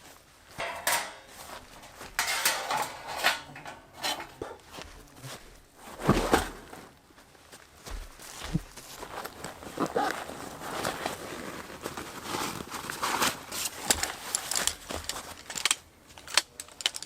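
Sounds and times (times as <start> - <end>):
cookware clattering: 0.6 - 4.6.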